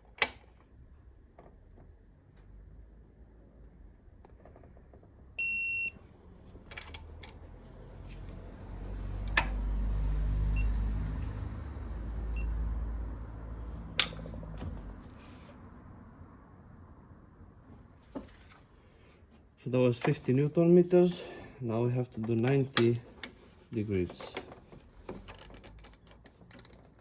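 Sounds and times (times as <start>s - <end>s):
short electronic beep: 5.4s - 6.0s.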